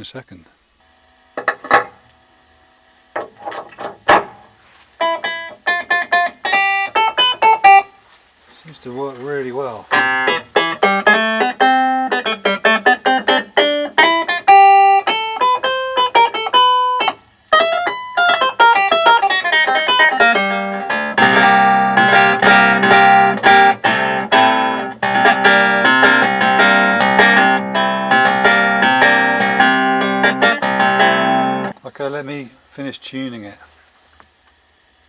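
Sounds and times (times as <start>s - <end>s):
clavinet playing notes and chords: 5.0s - 8.0s, 9.0s - 31.8s.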